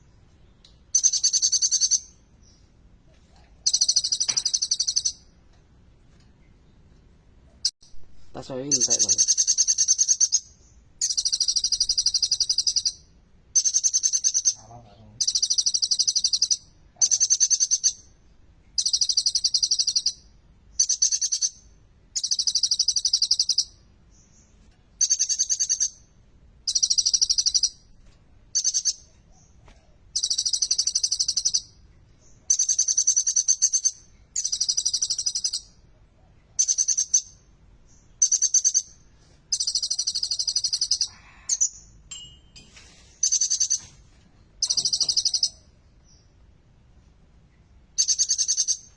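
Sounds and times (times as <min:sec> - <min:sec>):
sunbird singing trilled phrases: 0:00.9 - 0:02.6, 0:03.6 - 0:05.2, 0:07.8 - 0:18.1, 0:18.8 - 0:26.0, 0:26.7 - 0:27.8, 0:30.2 - 0:35.8, 0:36.6 - 0:42.6, 0:44.6 - 0:46.3, 0:48.0 - 0:48.9.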